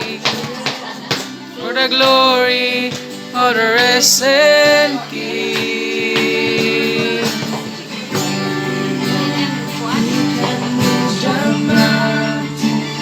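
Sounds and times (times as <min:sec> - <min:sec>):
strummed acoustic guitar: 0:00.0 - 0:13.0.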